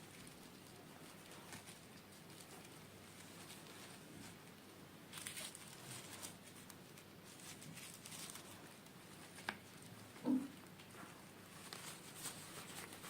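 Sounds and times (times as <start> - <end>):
toy packaging rustling: 5.1 - 8.6.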